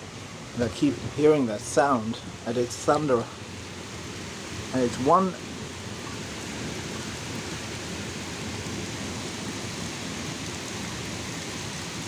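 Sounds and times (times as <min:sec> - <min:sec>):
heavy rain pouring: 0:00.0 - 0:12.0
low thunder rumble: 0:03.4 - 0:12.0.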